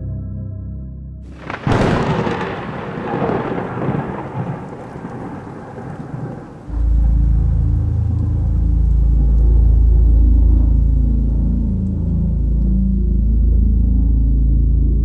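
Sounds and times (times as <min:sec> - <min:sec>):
rain-like hiss: 0:01.3 - 0:12.7
sharp thunderclap with rumble: 0:01.4 - 0:11.6
loud low steady drone: 0:06.2 - 0:15.0.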